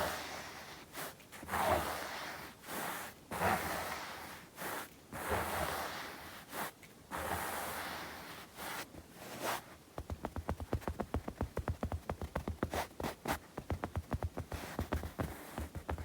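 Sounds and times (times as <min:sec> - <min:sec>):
fast fingertip taps: 0:10.0 - 0:16.0
palms rubbing together: 0:10.0 - 0:16.0.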